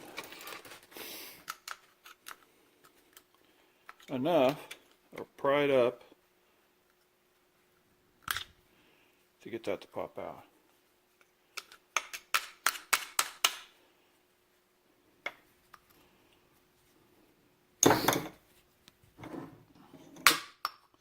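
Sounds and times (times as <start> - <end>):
metal tool clinking: 17.8 - 18.4.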